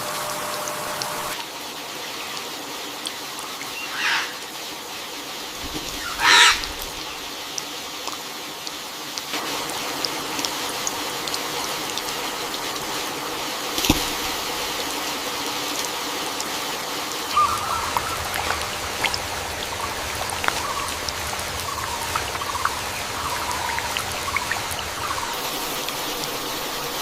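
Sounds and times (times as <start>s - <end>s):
water dripping: 0.1s - 27.0s
heavy rain falling: 9.0s - 27.0s.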